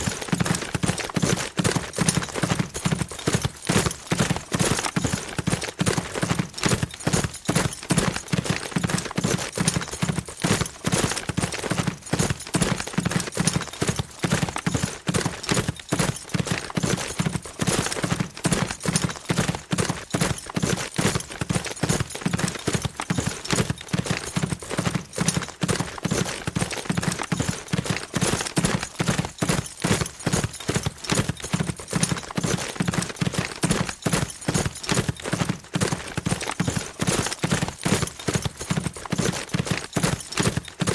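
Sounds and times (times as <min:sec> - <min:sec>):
horse hooves galloping: 0:00.0 - 0:40.9.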